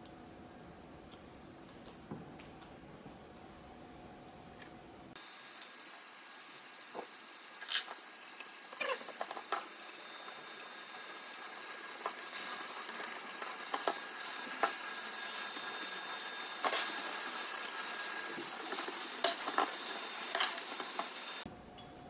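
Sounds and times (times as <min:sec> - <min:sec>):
steady hiss: 0:05.1 - 0:21.5.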